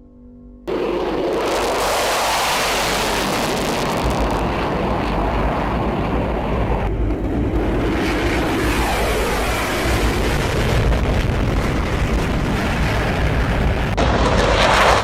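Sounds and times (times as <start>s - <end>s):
jet engine roar: 0.7s - 15.0s.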